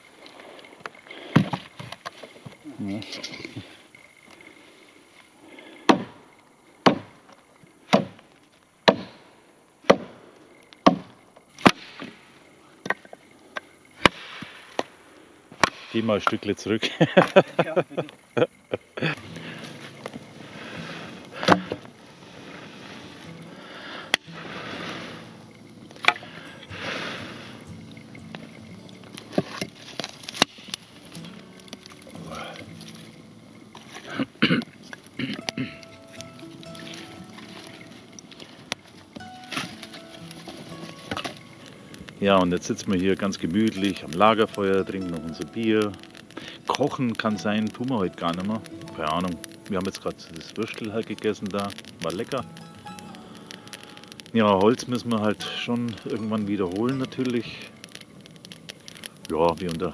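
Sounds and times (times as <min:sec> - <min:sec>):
rustling hiss: 0:00.0 - 0:59.9
axe chopping dry log: 0:05.9 - 0:06.2, 0:06.8 - 0:07.2, 0:07.9 - 0:08.2, 0:08.8 - 0:09.2, 0:09.8 - 0:10.2, 0:10.8 - 0:12.1, 0:21.4 - 0:21.8
dry wood cracking: 0:19.0 - 0:59.9
small clicks: 0:45.7 - 0:59.9.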